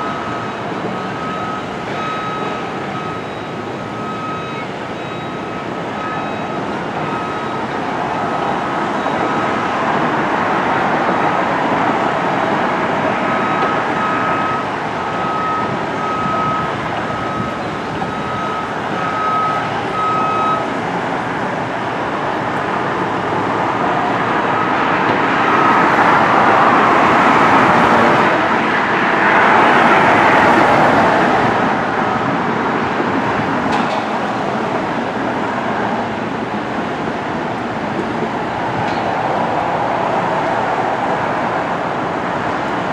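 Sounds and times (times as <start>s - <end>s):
reversing alarm beeping: 0.0s - 10.1s, 13.2s - 20.7s, 24.6s - 28.4s, 32.0s - 32.4s
traffic noise: 0.0s - 42.9s
vehicles passing by: 0.0s - 42.9s.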